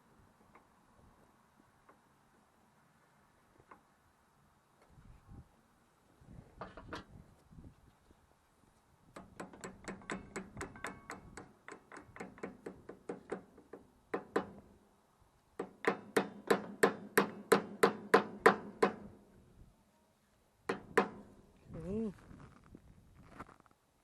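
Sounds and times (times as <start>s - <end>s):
hammer tapping on steel: 9.2s - 14.6s.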